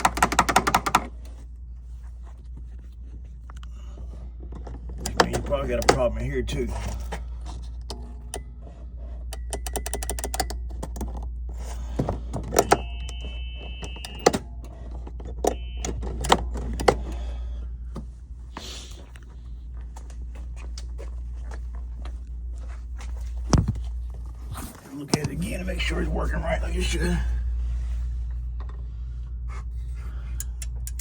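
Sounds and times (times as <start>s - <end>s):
steady low hum: 0.0s - 31.0s
switch clicks and knocks: 9.4s - 11.1s.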